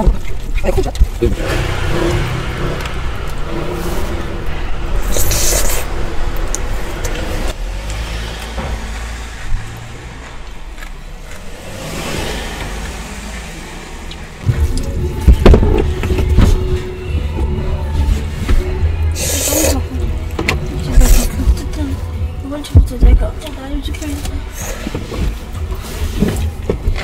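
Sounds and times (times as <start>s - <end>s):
car cabin rumble: 8.5s - 27.0s.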